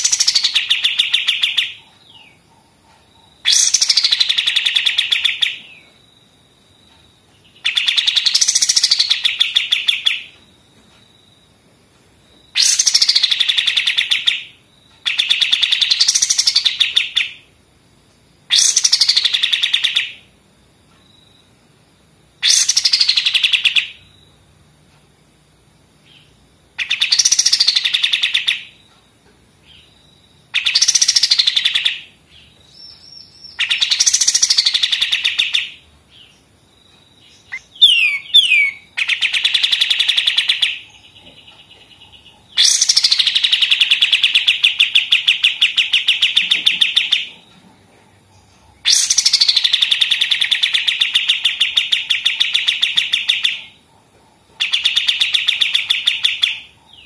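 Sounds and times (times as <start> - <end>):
quick sweeping bird chirps: 37.4 - 39.6
songbird rattling trills: 37.4 - 47.3.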